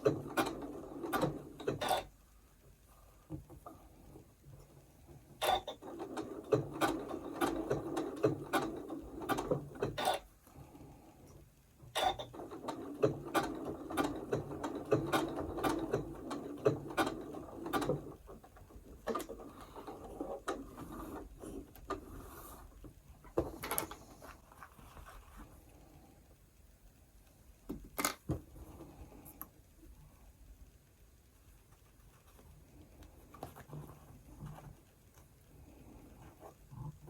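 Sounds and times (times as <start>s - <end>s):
sewing machine stitching: 0.0s - 2.2s, 5.0s - 10.3s, 11.9s - 22.6s.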